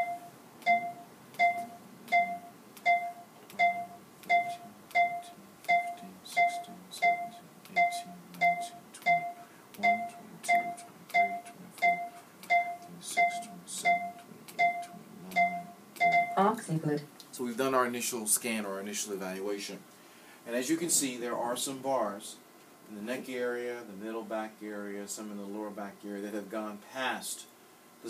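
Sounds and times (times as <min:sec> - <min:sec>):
short electronic beeps with clicks: 0:00.0 - 0:16.4.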